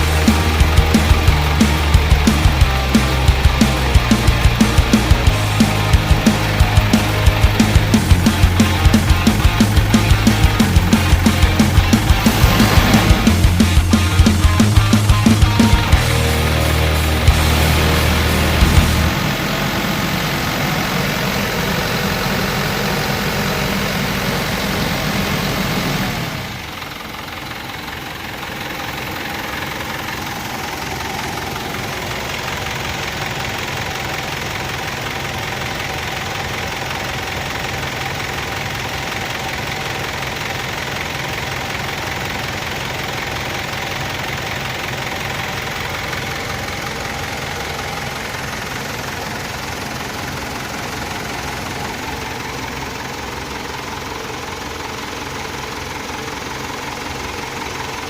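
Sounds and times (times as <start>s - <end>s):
diesel engine idling: 0.0s - 58.0s.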